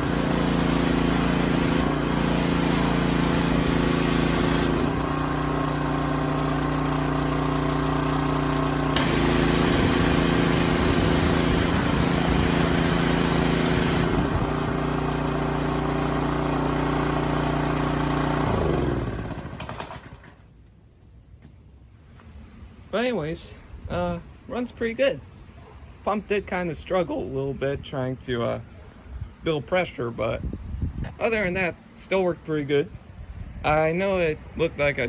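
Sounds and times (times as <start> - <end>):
small engine running under load: 0.0 - 20.4.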